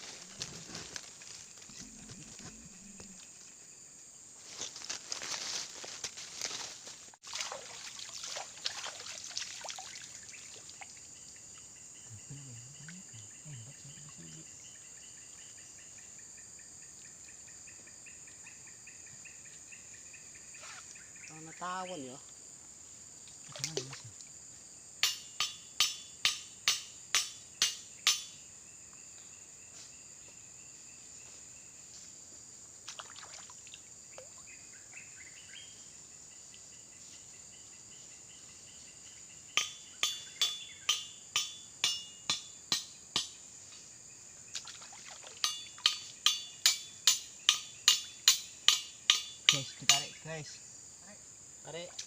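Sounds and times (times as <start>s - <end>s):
sharp splashy taps: 7.2s - 10.2s.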